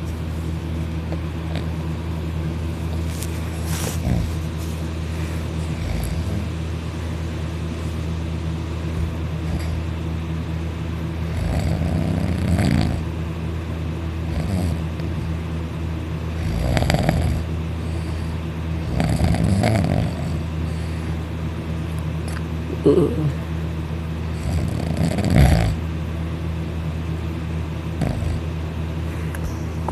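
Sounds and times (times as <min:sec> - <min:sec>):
steady low hum: 0:00.0 - 0:29.9
loud snoring: 0:03.9 - 0:04.4, 0:05.6 - 0:06.6, 0:09.4 - 0:09.9, 0:11.2 - 0:13.1, 0:14.2 - 0:15.1, 0:16.3 - 0:20.8, 0:24.3 - 0:25.8, 0:28.0 - 0:28.4.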